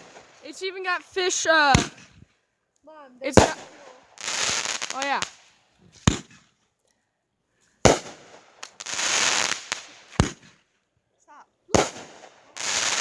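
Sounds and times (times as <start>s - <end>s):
firework bangs: 0.0s - 2.2s, 3.2s - 6.5s, 7.8s - 10.6s, 11.7s - 13.0s
crackling fizzing firework effects: 0.0s - 2.3s, 3.2s - 6.5s, 7.8s - 10.7s, 11.7s - 13.0s.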